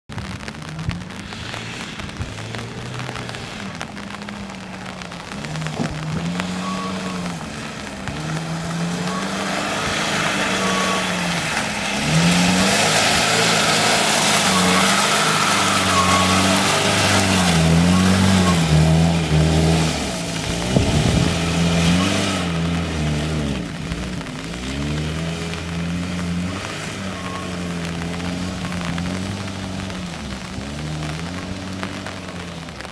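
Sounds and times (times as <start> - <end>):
car engine revving: 0.1 - 32.9.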